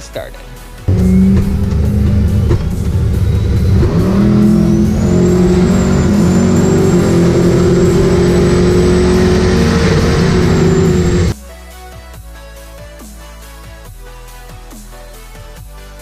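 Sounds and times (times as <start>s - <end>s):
car engine pulling hard: 0.9s - 11.4s
turbo whine: 0.9s - 11.4s.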